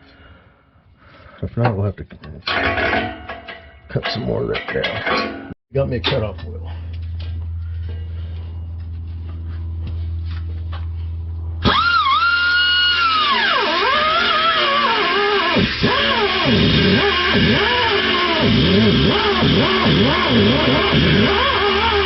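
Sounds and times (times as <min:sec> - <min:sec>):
steady low hum: 0:05.7 - 0:12.2
cutoff wheel whining: 0:11.6 - 0:22.0.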